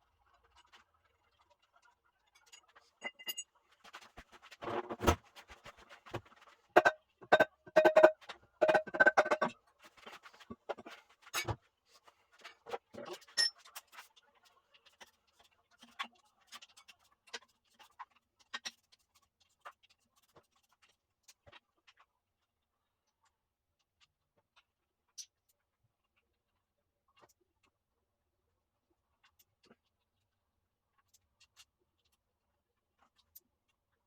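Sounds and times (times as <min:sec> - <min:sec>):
metal tools clicking and knocking: 0:02.4 - 0:03.5, 0:06.8 - 0:09.5.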